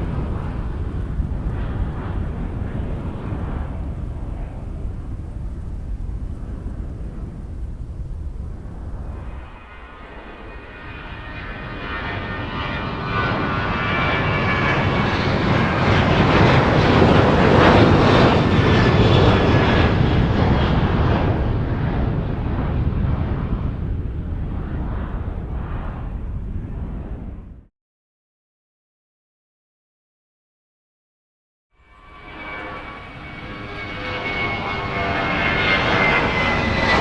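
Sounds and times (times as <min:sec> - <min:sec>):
jet engine rumble passing by: 0:00.0 - 0:27.7, 0:31.8 - 0:37.0
high whining tones: 0:32.0 - 0:37.0.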